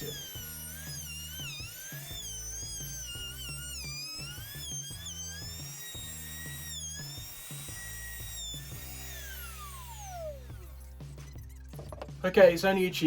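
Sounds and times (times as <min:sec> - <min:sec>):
router spinning down: 0:00.0 - 0:12.2
background music with low beat: 0:00.0 - 0:13.0
router high whine: 0:00.0 - 0:13.0.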